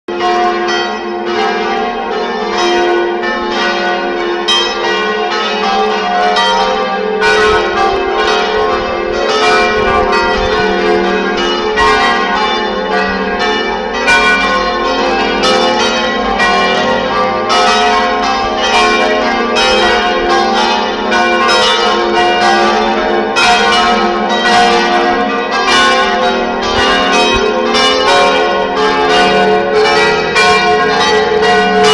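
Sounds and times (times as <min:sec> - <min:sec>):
church bells pealing: 0:00.1 - 0:31.9.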